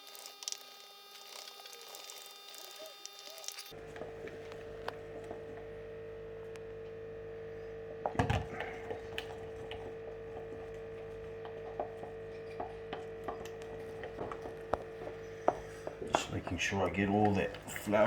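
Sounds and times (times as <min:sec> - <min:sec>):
electrical hum: 0:00.0 - 0:18.0.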